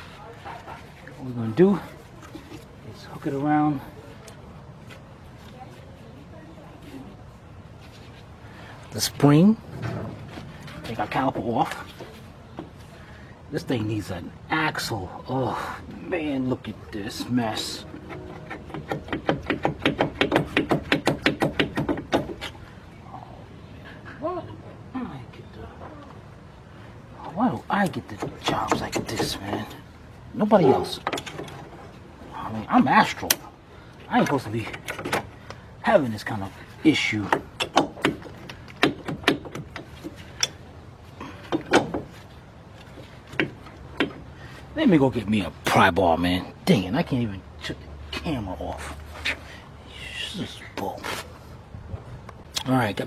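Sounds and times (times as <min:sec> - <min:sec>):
rapid metal-on-metal knocking: 0:17.8 - 0:22.4.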